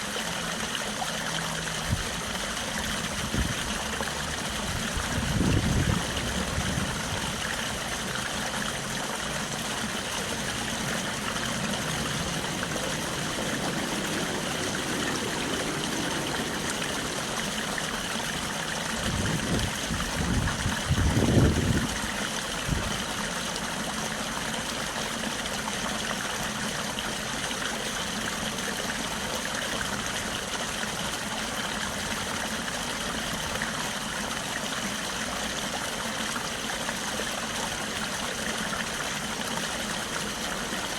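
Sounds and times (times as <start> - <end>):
stream water rushing: 0.0 - 40.9
low rumble: 10.0 - 21.8.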